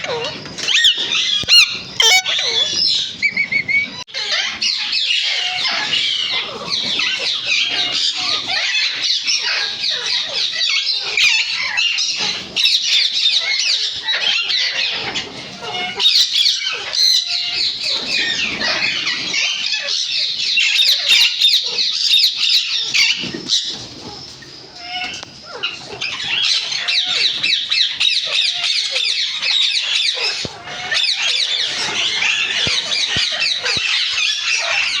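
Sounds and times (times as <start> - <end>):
parrots chattering and squawking: 0.0 - 35.0.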